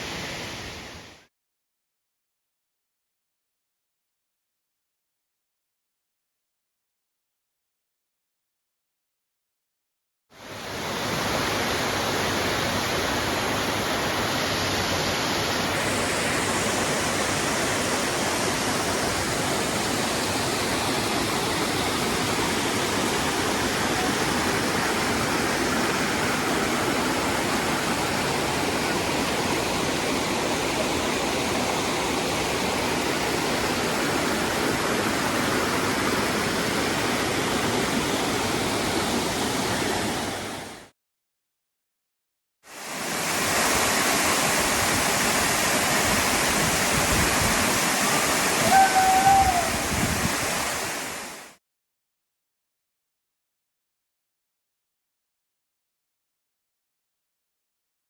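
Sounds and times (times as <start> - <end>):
waterfall rushing: 10.4 - 40.8, 42.7 - 51.6.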